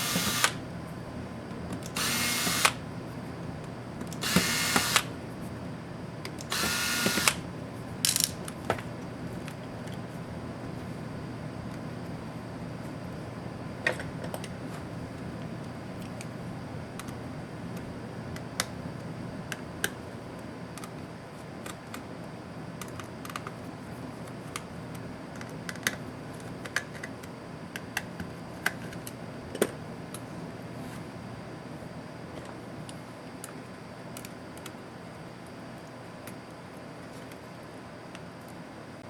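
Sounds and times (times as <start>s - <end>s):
steady low hum: 0.0s - 39.0s
hand tools clicking on laptop parts: 4.0s - 5.1s, 6.3s - 7.4s.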